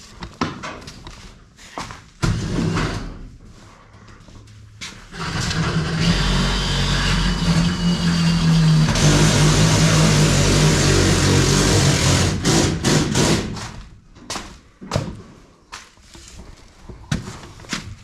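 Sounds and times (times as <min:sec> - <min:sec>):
engine starting and running: 0:05.1 - 0:12.5.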